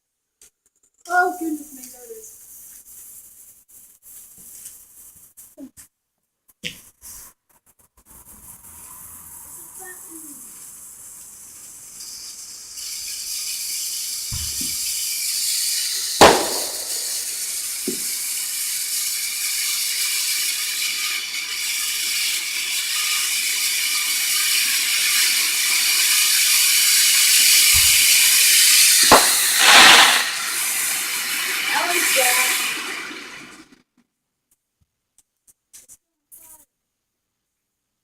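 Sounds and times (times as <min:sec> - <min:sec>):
firework fountain hissing: 0:01.1 - 0:05.4, 0:08.2 - 0:33.8
firework bangs: 0:12.0 - 0:33.7.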